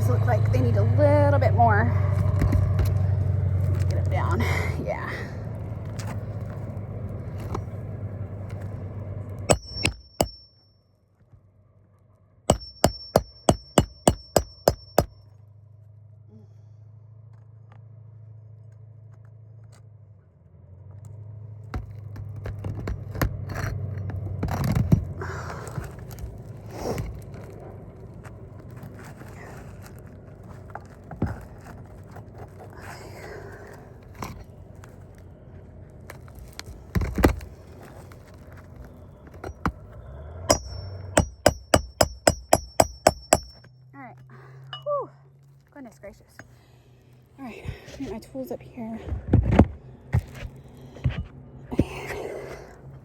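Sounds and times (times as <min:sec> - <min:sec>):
hammer striking nails: 0:09.5 - 0:10.6, 0:12.5 - 0:15.2, 0:40.5 - 0:43.7.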